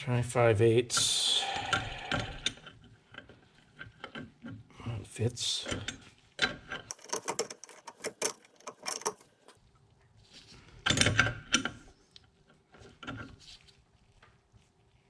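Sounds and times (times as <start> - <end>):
ratchet wrench clicking: 6.9 - 9.6.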